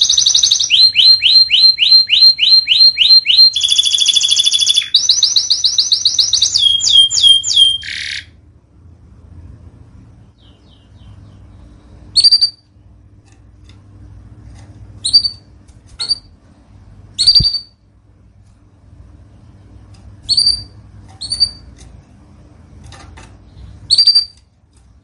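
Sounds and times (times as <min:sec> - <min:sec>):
canary trilling: 0:00.0 - 0:08.4, 0:10.3 - 0:12.9, 0:15.0 - 0:16.4, 0:17.1 - 0:17.9, 0:20.2 - 0:21.9, 0:23.5 - 0:24.5.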